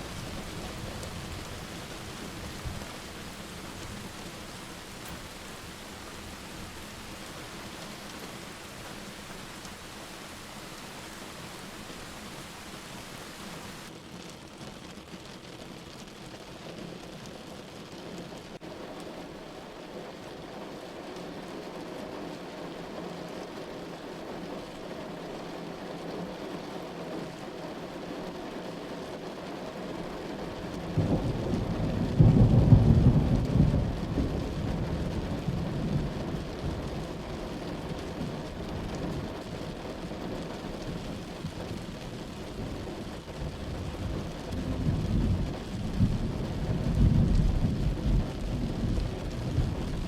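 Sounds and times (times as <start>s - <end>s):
low rumble of thunder: 0.0s - 13.9s, 30.7s - 50.0s
steady rain hissing: 0.0s - 50.0s.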